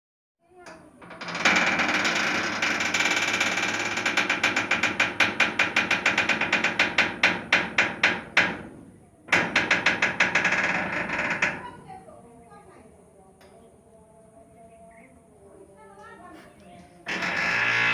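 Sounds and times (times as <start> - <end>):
door hinge creaking: 0.6 - 12.0, 17.0 - 17.9.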